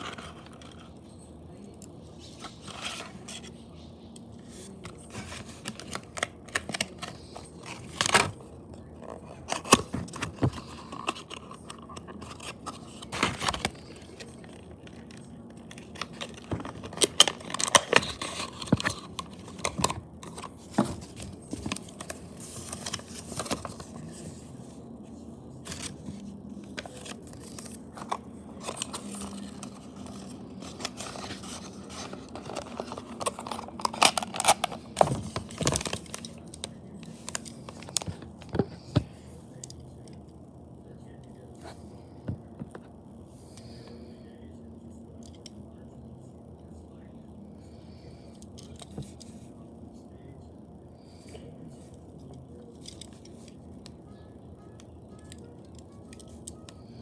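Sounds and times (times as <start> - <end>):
faint steady hum: 0.0 - 57.0
handling clicks and scrapes: 4.4 - 8.4, 9.0 - 24.6, 25.6 - 39.8.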